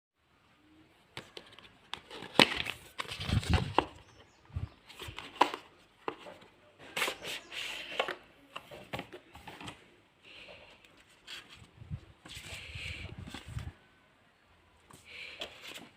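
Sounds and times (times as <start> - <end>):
packaging being opened: 1.2 - 4.1.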